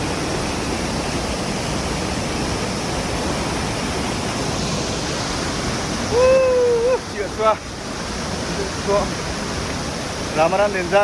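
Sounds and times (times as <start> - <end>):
rushing water: 0.0 - 11.0.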